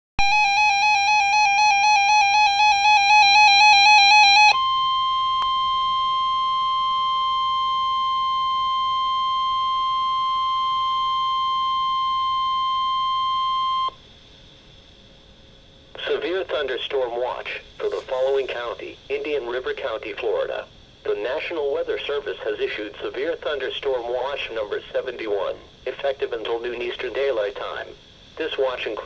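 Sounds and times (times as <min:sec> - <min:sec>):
steady warning alarm tone: 0:00.2 - 0:14.0.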